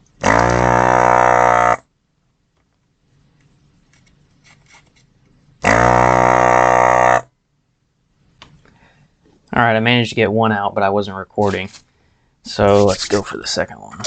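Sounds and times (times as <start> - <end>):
suction pump buzzing: 0.2 - 1.8, 5.6 - 7.2.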